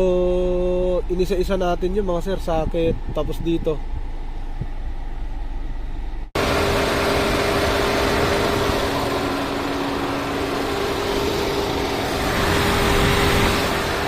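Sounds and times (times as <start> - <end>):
car engine drone: 0.0 - 14.0
climate-control blower: 2.4 - 14.0.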